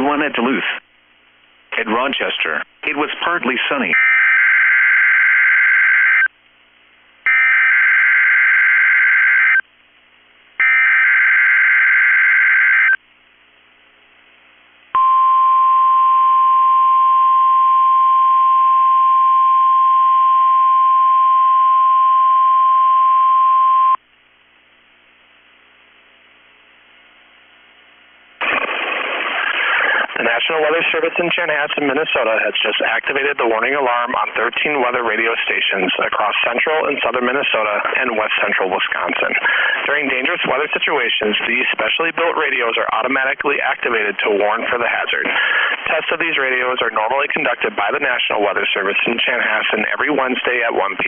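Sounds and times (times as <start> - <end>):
steady warning alarm tone: 7.3 - 9.6, 10.6 - 13.0.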